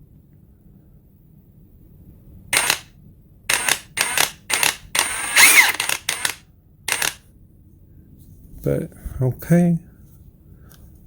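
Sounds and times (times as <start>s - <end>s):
impact wrench motor spinning: 2.6s - 2.9s, 3.5s - 7.2s.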